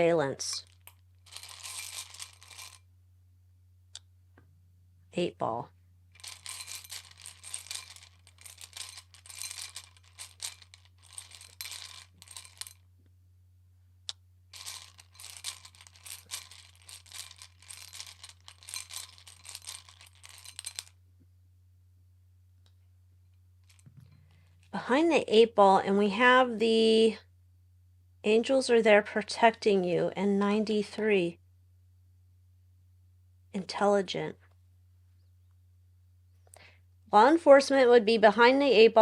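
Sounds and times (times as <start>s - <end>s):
small hard objects shuffled by hand: 0.6s - 2.8s, 6.2s - 12.8s, 14.6s - 20.9s.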